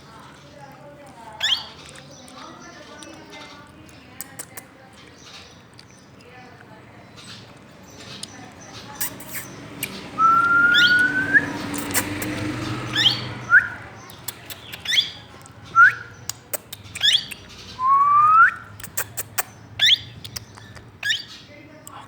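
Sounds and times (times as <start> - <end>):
parakeet calling: 1.4 - 1.8, 7.2 - 22.0
sharp clicks: 11.6 - 12.7, 14.0 - 15.6, 18.4 - 20.9.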